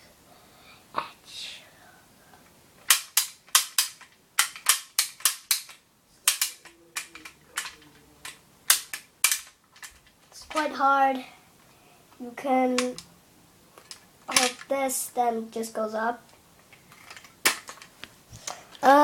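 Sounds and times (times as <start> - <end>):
toy shotgun mechanism clicking: 2.9 - 10.7, 12.8 - 13.1, 13.8 - 14.7, 16.7 - 17.9.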